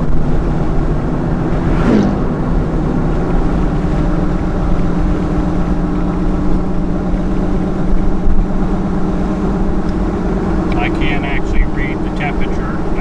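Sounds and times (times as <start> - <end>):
car engine drone: 0.0 - 13.0
road rumble: 0.0 - 13.0.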